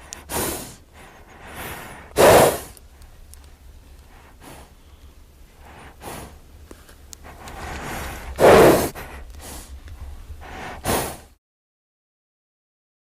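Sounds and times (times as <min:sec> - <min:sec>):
horse snorting: 0:00.0 - 0:02.8, 0:05.6 - 0:06.4, 0:07.2 - 0:09.7, 0:10.4 - 0:11.3.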